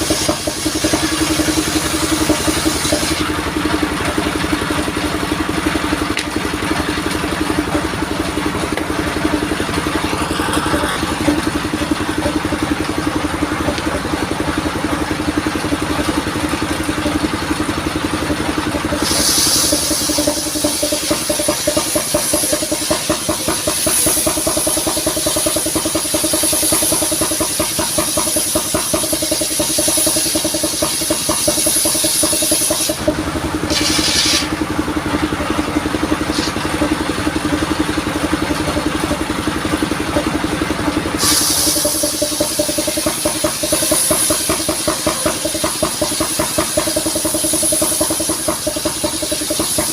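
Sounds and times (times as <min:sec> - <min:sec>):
saw blade cutting wood: 0:00.0 - 0:03.4, 0:18.8 - 0:34.6, 0:35.4 - 0:37.1
vehicle engine running: 0:00.0 - 0:49.9.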